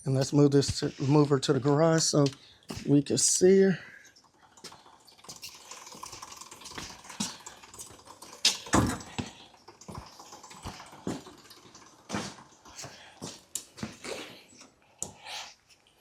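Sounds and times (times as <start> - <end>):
motorcycle being pushed: 4.0 - 14.4.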